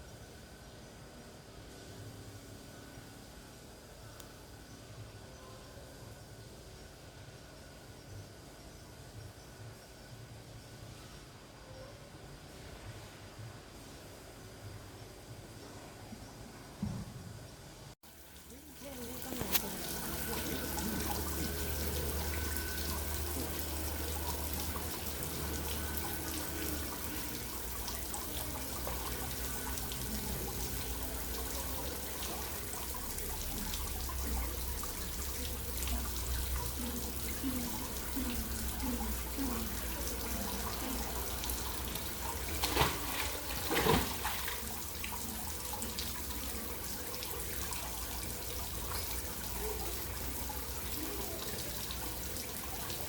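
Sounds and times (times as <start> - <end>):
water running and trickling: 18.0 - 53.0.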